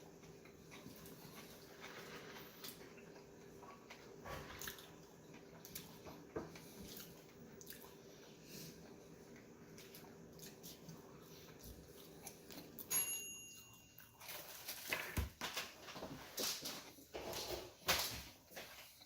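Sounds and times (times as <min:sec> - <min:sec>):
chewing and mouth sounds: 0:02.6 - 0:12.9.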